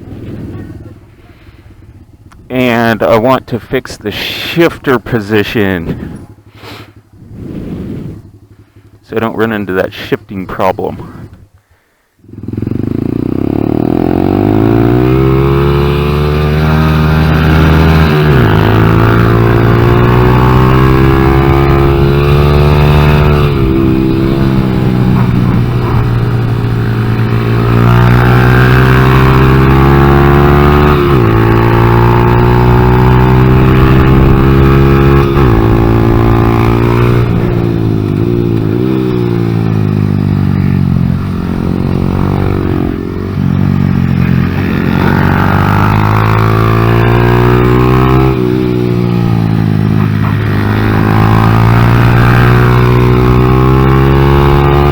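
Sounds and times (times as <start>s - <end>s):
motorcycle engine revving: 12.2s - 54.9s.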